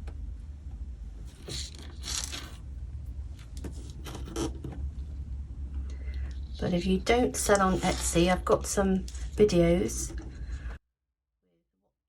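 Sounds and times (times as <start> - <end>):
steady low hum: 0.0 - 10.8
small objects rustling and scraping: 1.2 - 2.7, 6.1 - 10.8.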